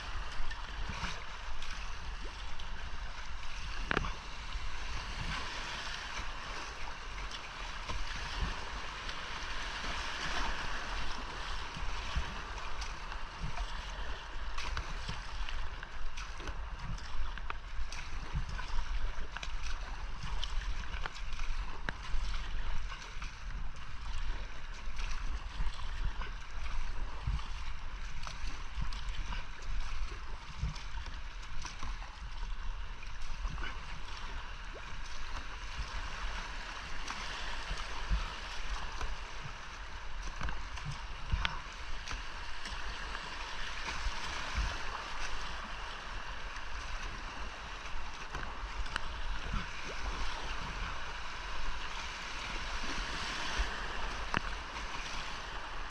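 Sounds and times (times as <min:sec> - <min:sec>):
whitewater rushing and gurgling: 0:00.0 - 0:55.9.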